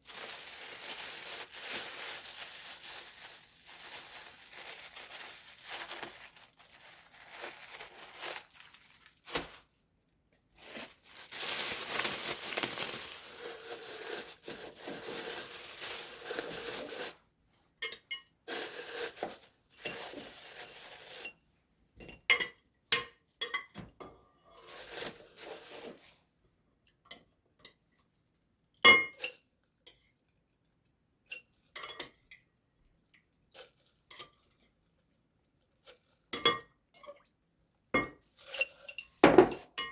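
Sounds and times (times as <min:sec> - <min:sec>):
dishes and utensils clattering: 0:38.0 - 0:39.9.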